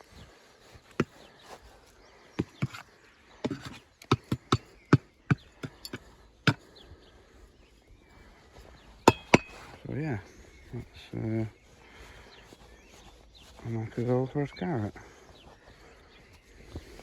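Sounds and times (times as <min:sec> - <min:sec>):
knocks and taps levelling compost: 0:02.4 - 0:06.7, 0:09.0 - 0:09.7.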